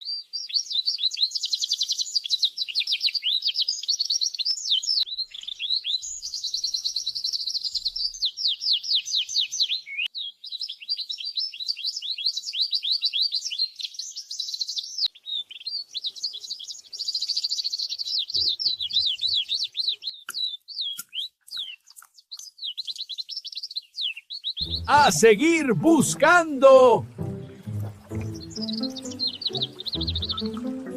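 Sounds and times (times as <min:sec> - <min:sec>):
canary singing trills: 0:27.0 - 0:30.9.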